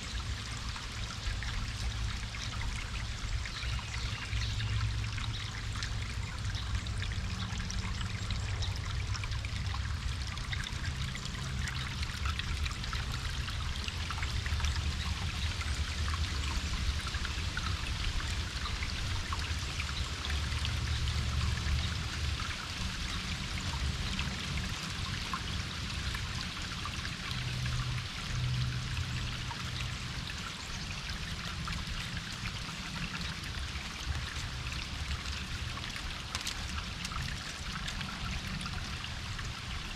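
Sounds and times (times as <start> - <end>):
stream water trickling: 0.0 - 39.9.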